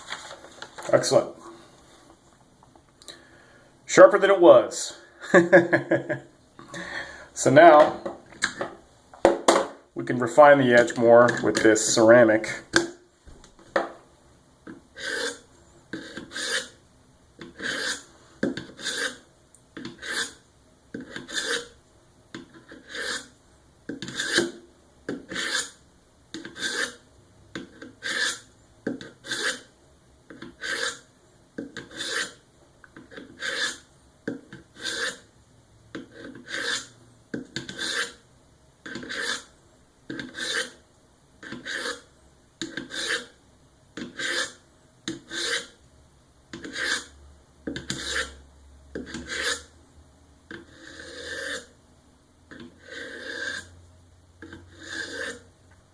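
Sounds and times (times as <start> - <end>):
knife rasping on ceramic hone: 15.0 - 16.8, 17.4 - 19.2, 19.8 - 20.4, 21.0 - 21.8, 22.4 - 23.3, 24.0 - 25.8, 26.4 - 27.0, 27.6 - 29.7, 30.4 - 31.0, 31.6 - 32.4, 33.0 - 33.9, 34.5 - 35.3, 36.0 - 36.9, 37.6 - 38.2, 38.8 - 39.5, 40.1 - 40.8, 41.4 - 43.4, 44.0 - 45.8, 46.6 - 47.1, 47.8 - 48.4, 49.0 - 49.7, 50.5 - 51.8, 52.5 - 53.7, 54.4 - 55.5.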